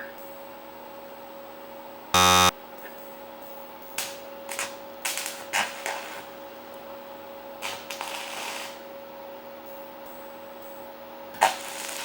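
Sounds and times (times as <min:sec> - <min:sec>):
electrical hum: 0:02.2 - 0:02.5
crackling welding hiss: 0:07.6 - 0:08.8, 0:11.4 - 0:12.0.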